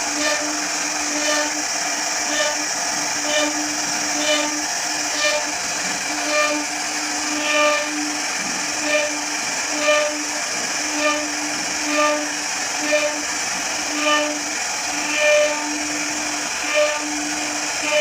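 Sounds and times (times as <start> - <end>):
machine humming: 0.0 - 18.0
machine whine: 0.0 - 18.0.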